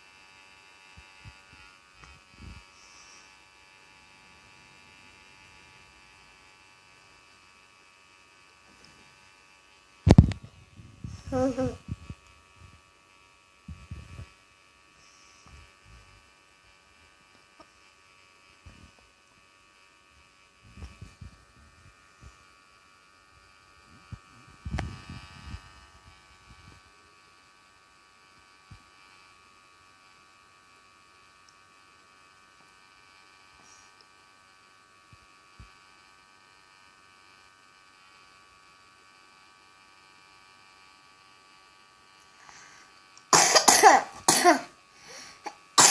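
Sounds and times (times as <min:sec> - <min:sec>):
nebulizer buzzing: 0:00.0 - 0:18.8, 0:41.0 - 0:45.9.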